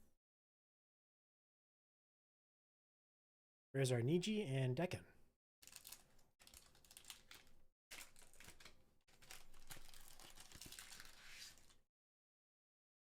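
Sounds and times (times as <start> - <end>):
foil wrapper crinkling: 5.6 - 11.8
trading cards rustling and clicking: 5.6 - 11.8.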